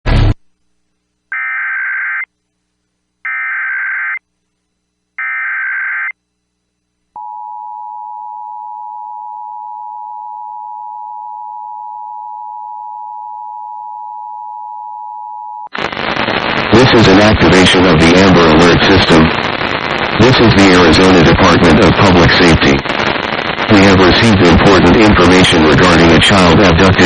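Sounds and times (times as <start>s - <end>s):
digital header data bursts: 15.7s - 27.0s.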